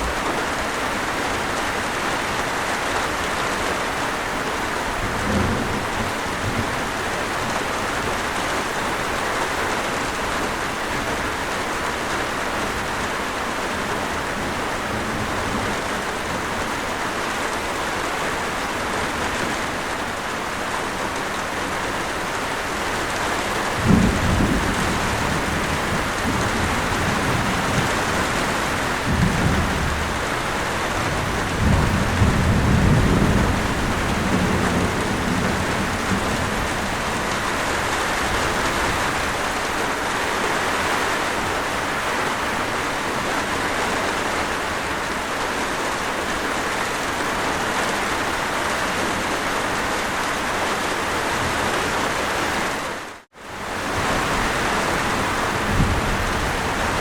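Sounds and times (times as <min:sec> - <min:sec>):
steady rain falling: 0:00.0 - 0:57.0
thunder rumbling: 0:04.8 - 0:08.3, 0:23.1 - 0:39.7, 0:53.6 - 0:57.0.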